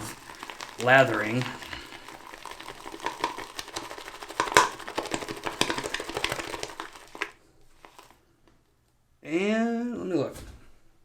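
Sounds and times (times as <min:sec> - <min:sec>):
shaving brush whipping lather: 0:00.0 - 0:08.2.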